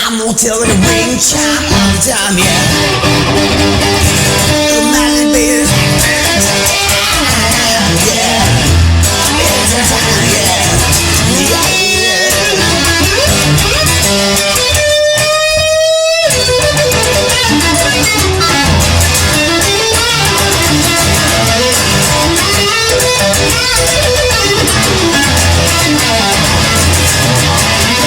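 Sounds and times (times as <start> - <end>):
guitar-led instrumental music: 0.0 - 28.0.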